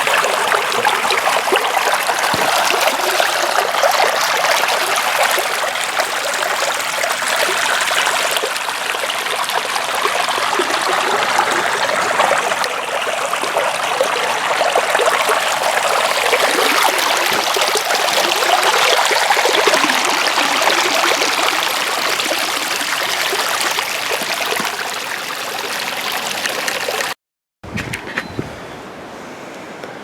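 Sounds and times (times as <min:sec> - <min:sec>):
stream babbling: 0:00.0 - 0:27.2.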